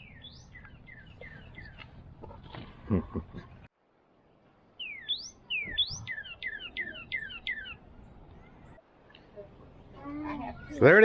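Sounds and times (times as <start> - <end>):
songbird whistled notes: 4.8 - 7.8.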